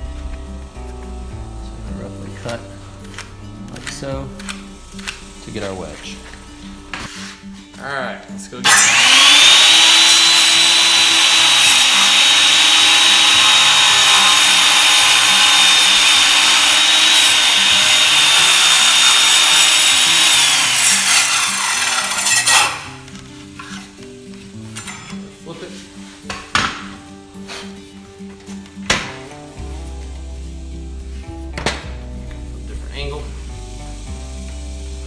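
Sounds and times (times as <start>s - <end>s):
electric power saw cutting wood: 2.5s - 7.0s, 8.6s - 23.8s.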